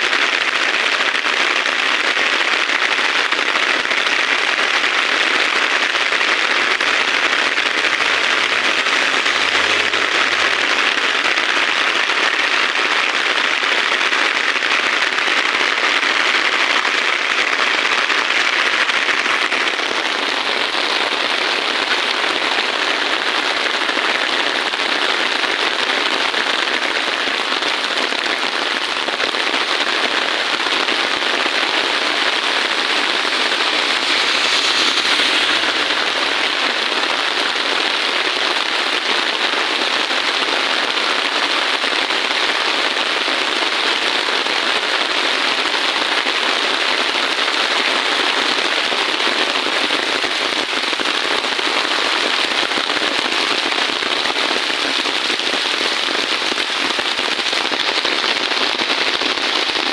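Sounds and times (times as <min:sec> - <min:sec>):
heavy rain falling: 0:00.0 - 0:24.0, 0:26.8 - 0:44.6.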